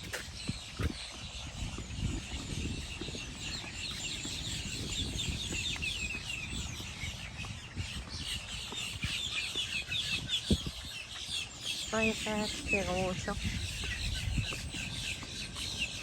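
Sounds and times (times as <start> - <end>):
birds chirping: 0.0 - 16.0.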